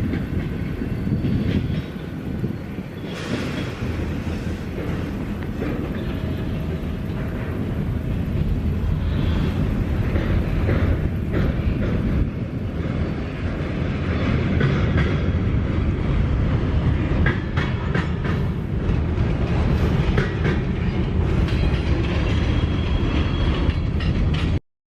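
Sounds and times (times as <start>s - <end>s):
train wheels rumbling on track: 0.0s - 24.6s
wheels clanking over rail joints: 0.0s - 24.6s.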